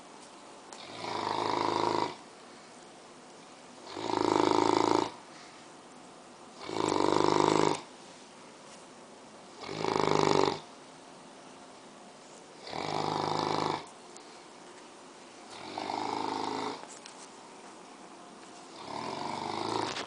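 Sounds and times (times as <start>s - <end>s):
dog snoring: 0.8s - 2.2s, 3.8s - 5.2s, 6.6s - 7.9s, 9.5s - 10.7s, 12.6s - 13.9s, 15.5s - 16.9s, 18.7s - 20.0s.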